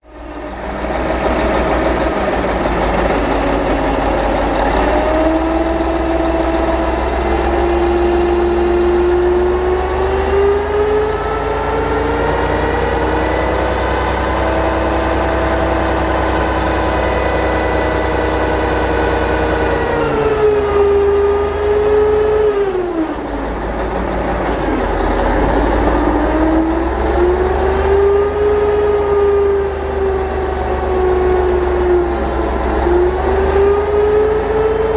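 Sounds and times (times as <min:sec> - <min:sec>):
vehicle engine running under load: 0:00.0 - 0:34.9.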